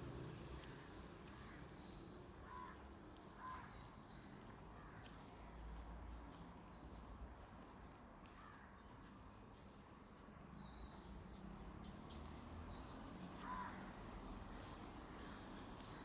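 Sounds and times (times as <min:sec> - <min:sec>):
crow cawing: 0:02.4 - 0:02.8, 0:03.4 - 0:03.8.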